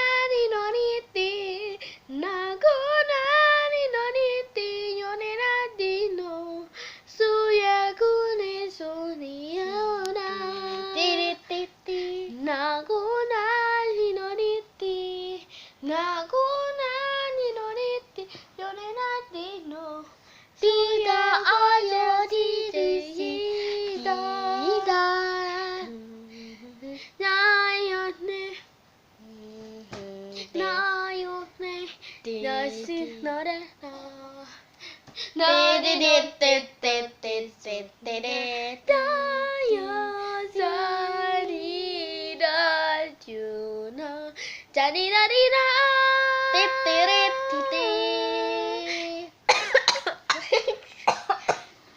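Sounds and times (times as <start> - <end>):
girl singing: 0.0 - 51.7
girl coughing: 49.5 - 51.8.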